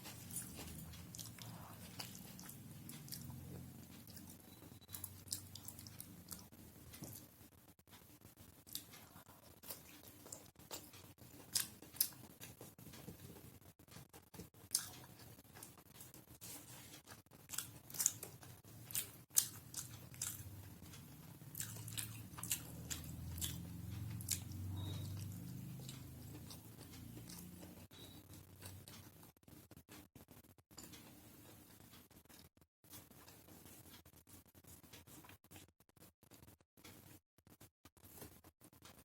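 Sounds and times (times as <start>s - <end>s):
person chewing food: 0.0s - 29.7s.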